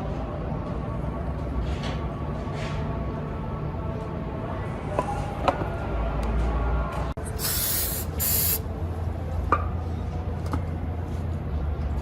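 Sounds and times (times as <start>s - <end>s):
spray hissing: 7.4s - 8.6s.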